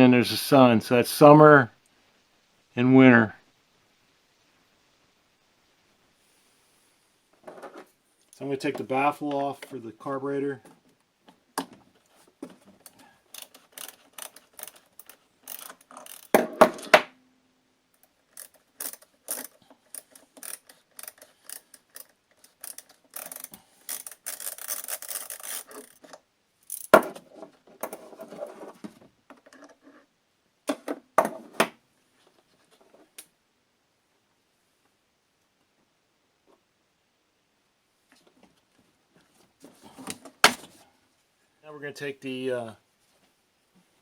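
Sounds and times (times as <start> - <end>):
tools clicking and scraping plastic: 12.4 - 16.6, 18.0 - 30.1
parts knocking when set down: 15.5 - 17.2.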